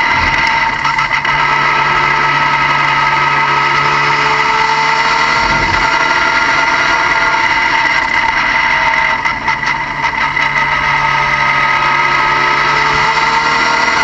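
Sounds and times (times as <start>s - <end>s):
low hum: 0.0s - 10.0s
car engine running: 0.0s - 14.0s
high-pitched whine: 0.0s - 14.0s.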